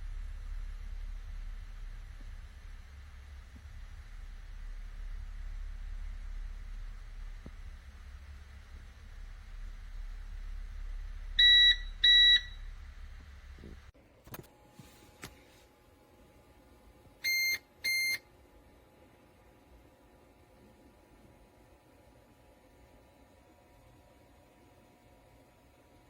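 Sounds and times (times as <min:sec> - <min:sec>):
low hum: 0:00.0 - 0:15.0
electronic double beeps: 0:11.4 - 0:12.7.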